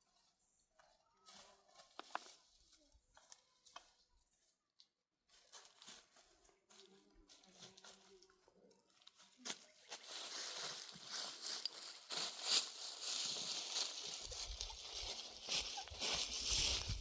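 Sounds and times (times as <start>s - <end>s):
rustling and crunching: 5.3s - 17.0s.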